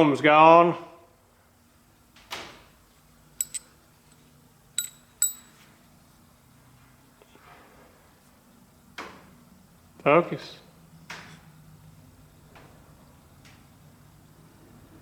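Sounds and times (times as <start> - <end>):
metal valves clinking: 3.4 - 5.6.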